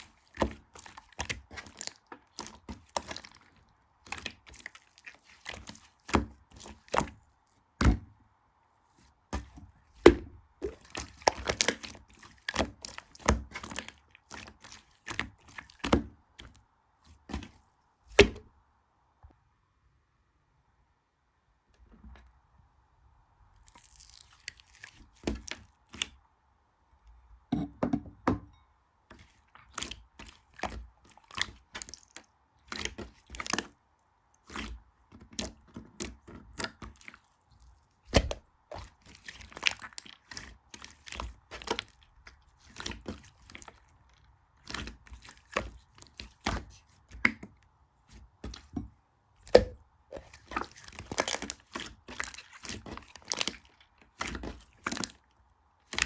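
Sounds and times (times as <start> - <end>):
slime squeezed and stretched: 0.0 - 7.2, 9.4 - 16.6, 23.6 - 26.2, 29.2 - 33.8, 34.4 - 47.4, 49.4 - 55.2
slime clicks and crackles: 34.4 - 47.5, 49.4 - 55.2.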